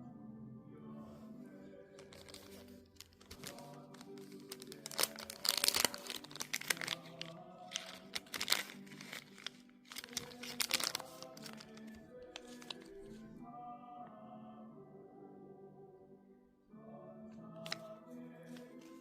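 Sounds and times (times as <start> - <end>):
background music: 0.0 - 19.0
packaging crinkling: 2.0 - 13.2.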